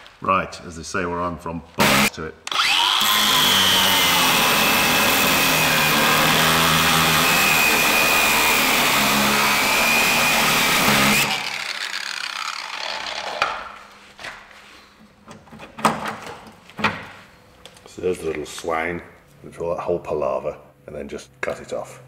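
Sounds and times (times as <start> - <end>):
angle grinder cutting metal: 1.8 - 13.5.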